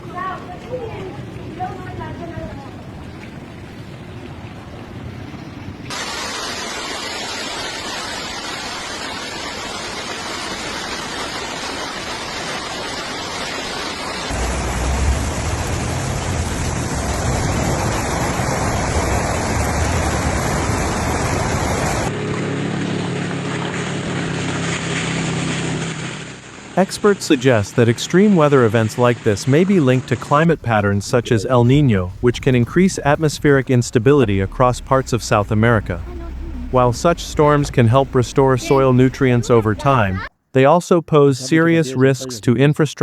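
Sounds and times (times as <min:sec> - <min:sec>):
heavy rain and hail: 0:05.9 - 0:22.1, 0:30.5 - 0:40.2
deep low rumble: 0:14.3 - 0:21.6, 0:30.5 - 0:40.3.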